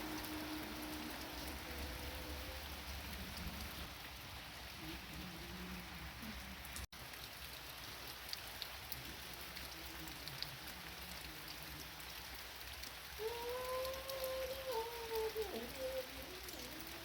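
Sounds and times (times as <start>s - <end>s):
steady rain falling: 0.0s - 17.0s.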